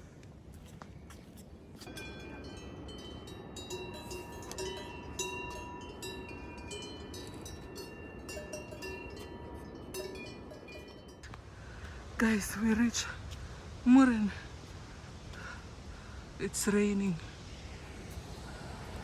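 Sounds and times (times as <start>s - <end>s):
low background noise: 0.0s - 19.0s
livestock bells clanking: 1.9s - 11.4s.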